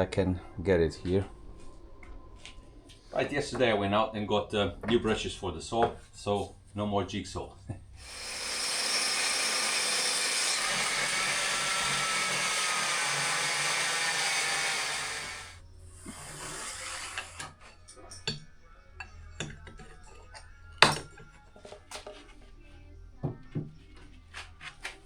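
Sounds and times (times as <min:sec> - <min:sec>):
table saw cutting plywood: 0:08.0 - 0:15.6, 0:16.2 - 0:17.5.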